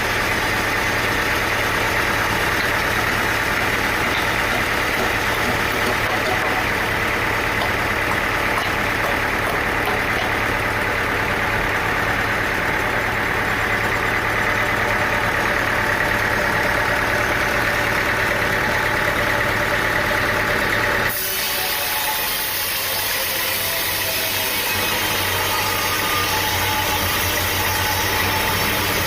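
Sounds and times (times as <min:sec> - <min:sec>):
engine-driven machine running: 0:00.0 - 0:29.0.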